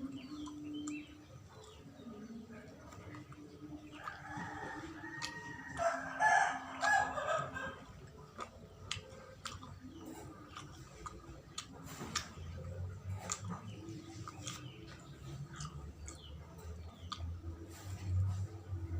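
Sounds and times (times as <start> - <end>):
eating clicks and smacks: 0.0 - 17.6
rooster crowing: 4.0 - 7.8.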